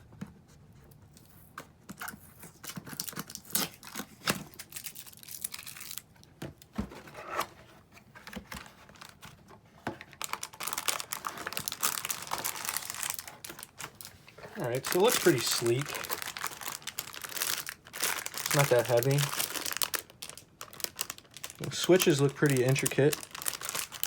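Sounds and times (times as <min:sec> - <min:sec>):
packaging tearing and crinkling: 0:02.0 - 0:06.1, 0:10.1 - 0:24.0.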